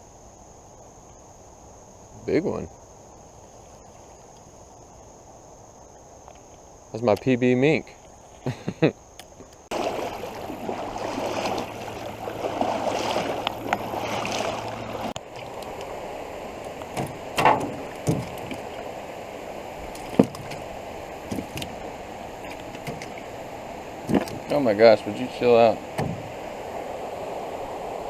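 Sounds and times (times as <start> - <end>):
low steady hum: 7.9 - 28.0
creek water rushing: 9.7 - 28.0
short sharp knocks: 26.0 - 26.3.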